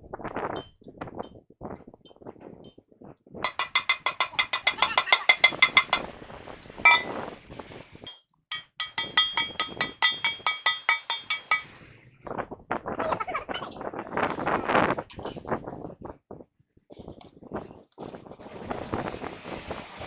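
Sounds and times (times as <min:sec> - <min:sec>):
rapid metal-on-metal tapping: 0:03.5 - 0:06.1, 0:06.8 - 0:07.1, 0:08.5 - 0:11.7
light metal clinks: 0:06.9 - 0:07.1, 0:15.1 - 0:15.6.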